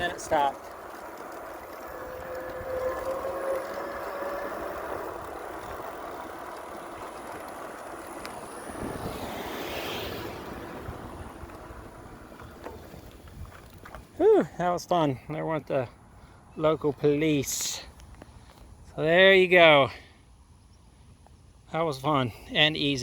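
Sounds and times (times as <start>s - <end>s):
car driving past: 0.0s - 13.1s
wind noise: 0.0s - 14.3s
bike tires on road: 0.0s - 23.0s.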